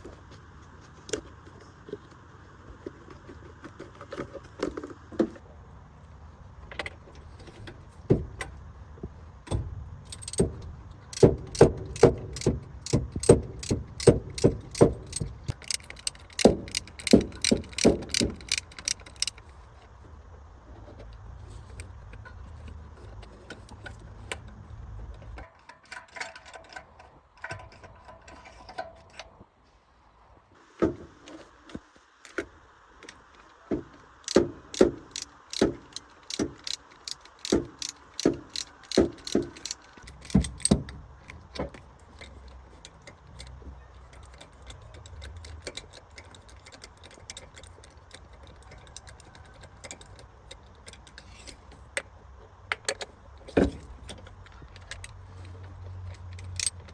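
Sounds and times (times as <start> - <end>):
metal clinking and knocking: 9.5 - 19.4, 34.3 - 56.9.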